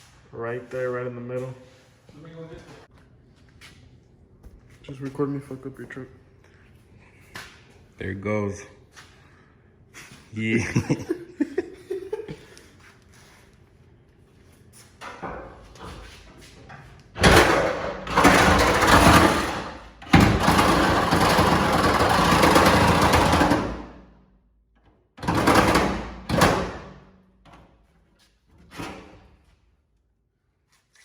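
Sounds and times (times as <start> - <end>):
power tool cutting sheet metal: 17.2 - 23.8.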